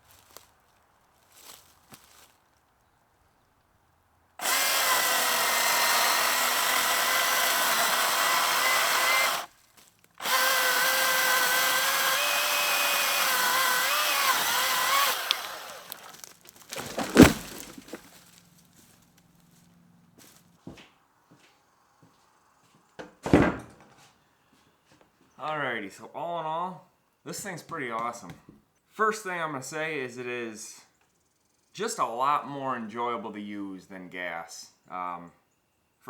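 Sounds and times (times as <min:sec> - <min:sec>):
chainsaw motor whine: 0:04.4 - 0:09.5, 0:10.2 - 0:18.4
loud thump: 0:16.7 - 0:18.1.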